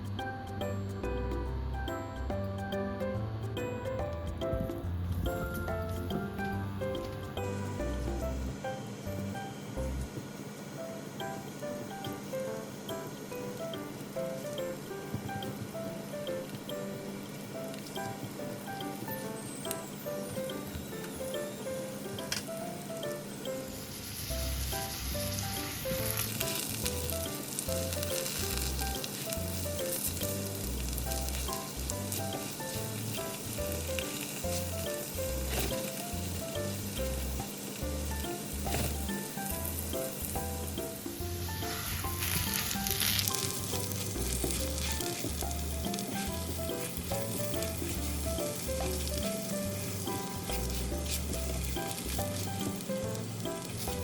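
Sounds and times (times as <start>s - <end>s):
food sizzling in a frying pan: 23.6s - 54.0s.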